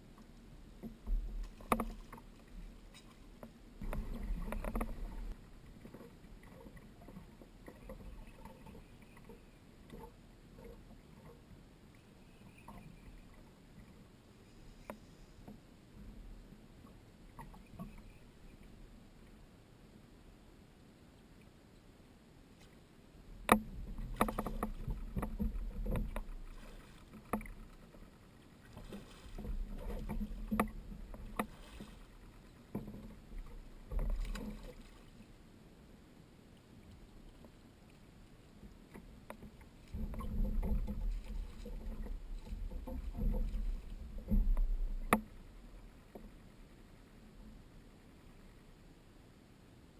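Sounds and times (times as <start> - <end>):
water rumbling against hull: 0.0 - 20.1, 22.8 - 48.8
sharp clicks and knocks: 1.0 - 2.2, 2.9 - 6.1, 23.4 - 26.4, 29.8 - 31.6, 38.9 - 45.4.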